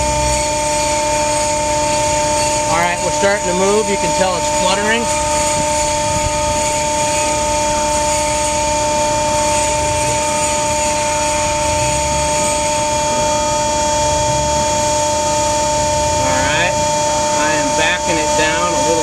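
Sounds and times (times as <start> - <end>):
hydraulic winch whining: 0.0 - 19.0.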